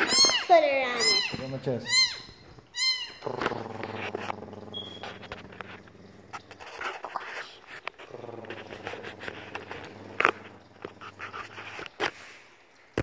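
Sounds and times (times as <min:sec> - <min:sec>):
man imitating cat purr: 0:08.1 - 0:10.5.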